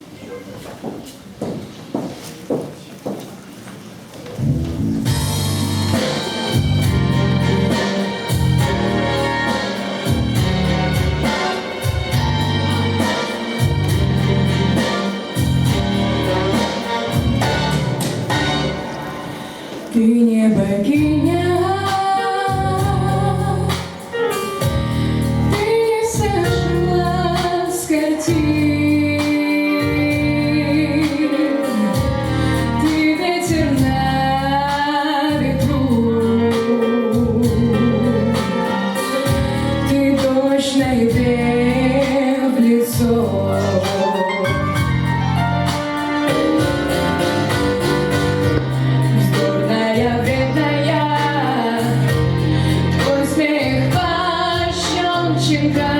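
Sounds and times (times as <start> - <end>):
instrumental accompaniment with beat: 4.4 - 20.0, 20.6 - 55.9
girl singing pop song: 19.9 - 24.1, 25.5 - 38.8, 39.9 - 44.8, 49.1 - 55.9.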